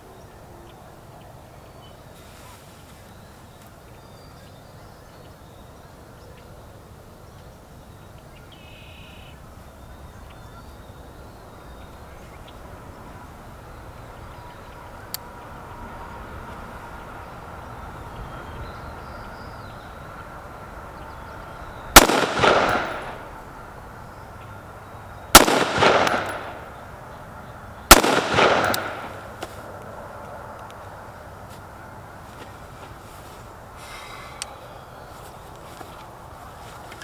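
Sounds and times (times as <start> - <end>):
sharp crack: 22.0 - 23.4, 25.3 - 27.0, 27.9 - 29.8.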